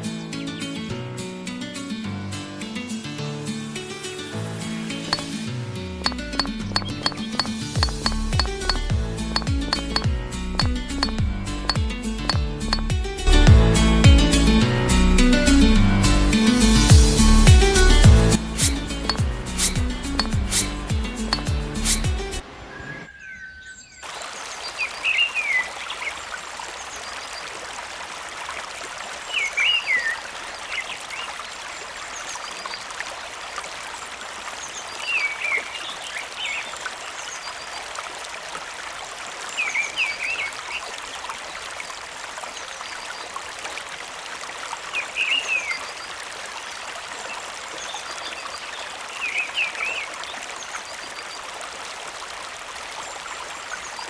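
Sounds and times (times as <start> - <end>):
trickling water: 3.8 - 54.0
chirping calls: 18.5 - 24.0.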